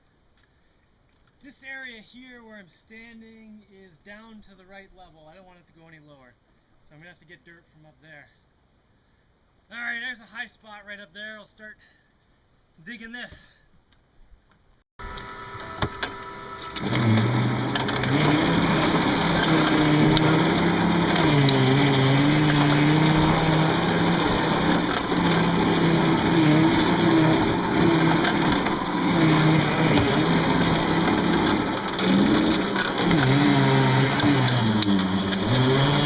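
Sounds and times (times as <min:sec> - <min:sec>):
bulldozer engine under load: 0:15.0 - 0:36.0.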